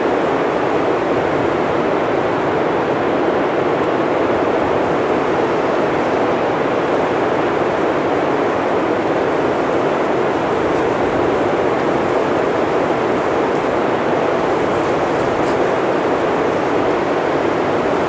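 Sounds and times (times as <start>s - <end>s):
blizzard wind rushing: 0.0s - 18.0s.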